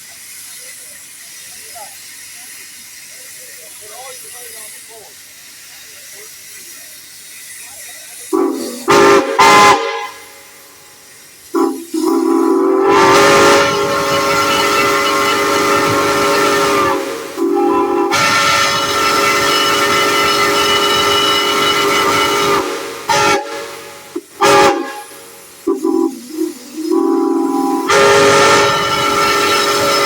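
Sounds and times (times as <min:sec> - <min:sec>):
hiss of escaping steam: 0:00.0 - 0:30.0
steam whistle blasts: 0:08.3 - 0:10.8, 0:11.5 - 0:30.0.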